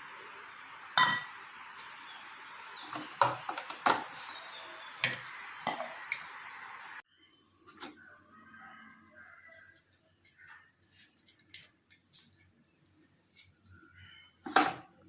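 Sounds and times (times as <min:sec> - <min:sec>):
utensils clinking against dishes: 0:01.0 - 0:01.4.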